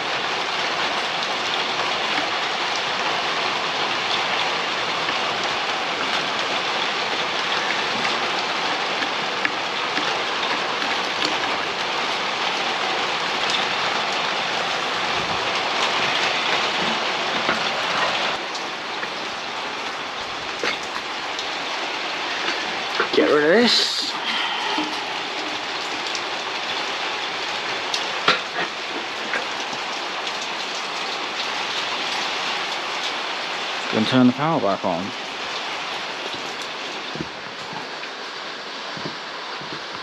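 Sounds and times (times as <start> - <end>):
steady hiss: 19.1 - 29.3.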